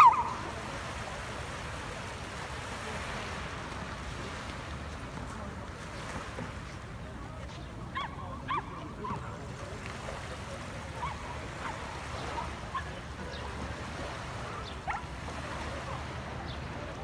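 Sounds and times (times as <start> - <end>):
surf rushing: 0.0 - 7.0
wind: 0.0 - 17.0.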